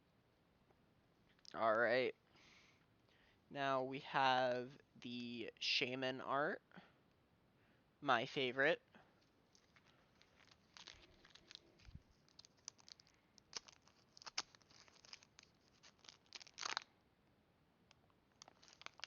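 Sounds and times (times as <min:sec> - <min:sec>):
foil wrapper tearing and crinkling: 0:09.5 - 0:16.9, 0:18.4 - 0:19.0.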